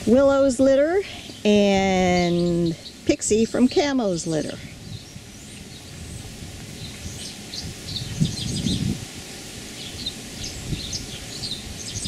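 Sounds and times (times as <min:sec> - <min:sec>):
small birds chirping: 0:00.3 - 0:12.0.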